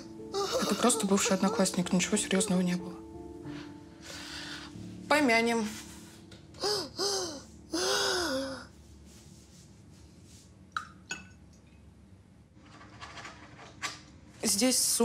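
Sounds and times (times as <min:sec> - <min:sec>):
woman sobbing: 0:00.3 - 0:02.7, 0:06.6 - 0:08.7.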